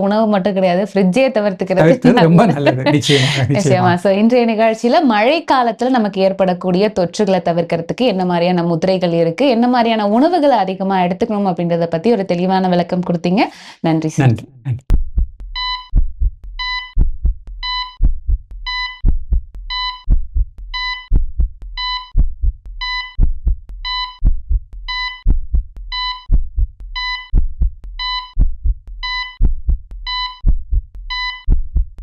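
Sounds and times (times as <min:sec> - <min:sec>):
low heartbeat thumps: 0:14.4 - 0:32.0
heart monitor beep: 0:15.6 - 0:32.0.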